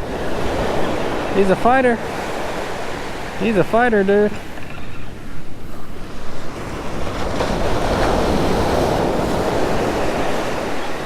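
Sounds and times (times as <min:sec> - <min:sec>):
ocean waves breaking: 0:00.0 - 0:11.0
wind on microphone: 0:00.0 - 0:11.0.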